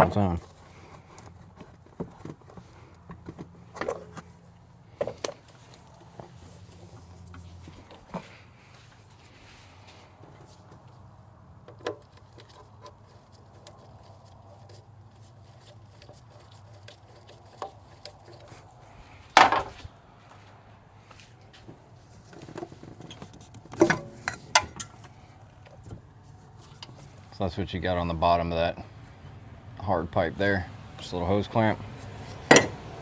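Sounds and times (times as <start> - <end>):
clicks and knocks of hand tools: 22.4 - 26.0, 32.3 - 32.9.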